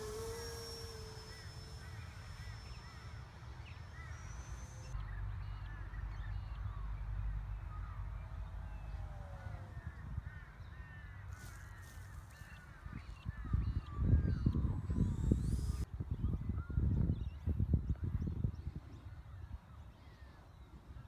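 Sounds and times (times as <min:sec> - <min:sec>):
wind rumble on microphone: 0:12.1 - 0:19.8.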